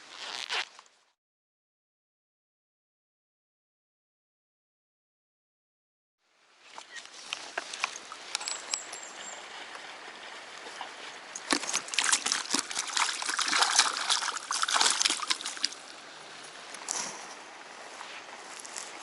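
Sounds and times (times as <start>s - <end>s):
water splashing and trickling: 6.6s - 17.0s.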